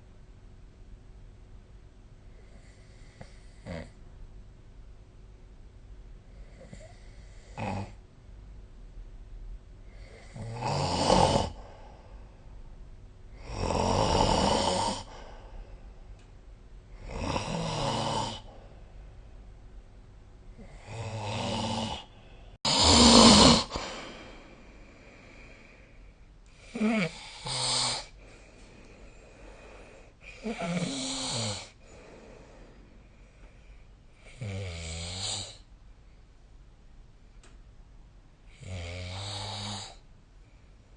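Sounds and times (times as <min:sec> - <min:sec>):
person snoring: 0:06.4 - 0:08.0, 0:09.9 - 0:12.2, 0:13.3 - 0:15.9, 0:16.9 - 0:18.9, 0:20.5 - 0:32.8, 0:34.2 - 0:35.7, 0:38.6 - 0:40.0.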